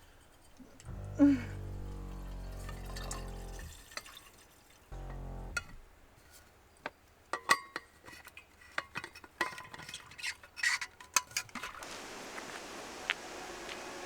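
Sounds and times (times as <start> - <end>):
steady hiss: 11.8 - 14.0.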